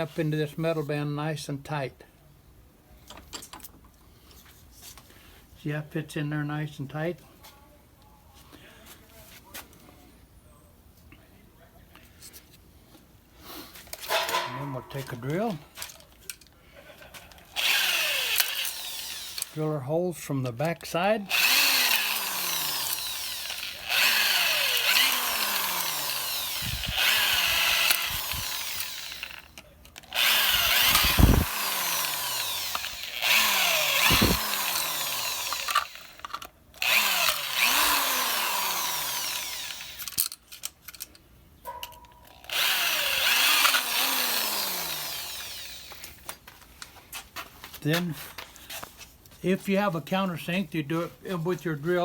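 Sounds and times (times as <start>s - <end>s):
electric drill boring: 17.6s - 19.6s, 21.3s - 40.3s, 42.3s - 46.2s.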